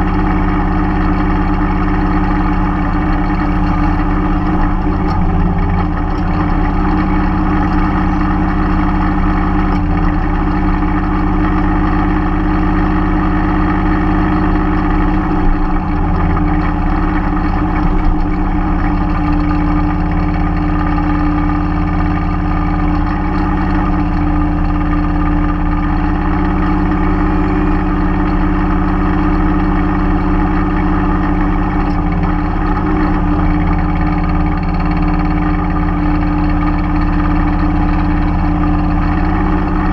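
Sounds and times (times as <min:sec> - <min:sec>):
tractor diesel engine running: 0:00.0 - 0:39.9.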